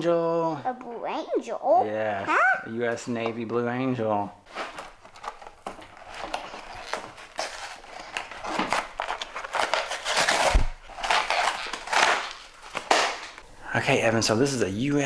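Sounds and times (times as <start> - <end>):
plastic and cardboard crinkling: 4.4 - 15.0.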